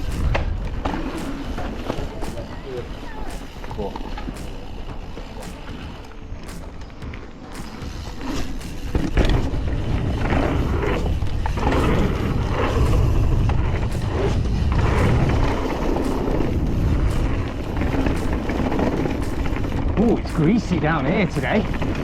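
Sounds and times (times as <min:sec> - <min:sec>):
wind rumbling on microphone: 0:00.0 - 0:03.0, 0:08.9 - 0:22.0
tyres rolling on dirt: 0:00.0 - 0:22.0.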